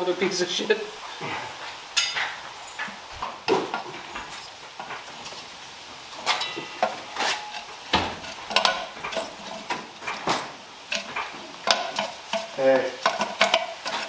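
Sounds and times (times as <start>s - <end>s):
tools and metal parts clinking: 2.0s - 2.8s, 6.2s - 14.0s.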